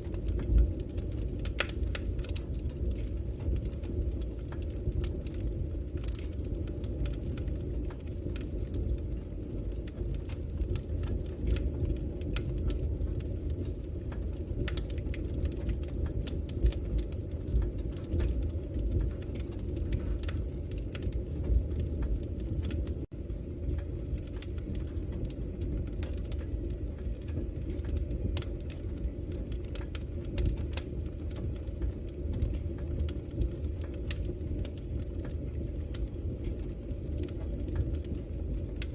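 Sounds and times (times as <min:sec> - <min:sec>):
low rush of flames: 0:00.0 - 0:38.9
wood crackling and popping: 0:00.0 - 0:38.9.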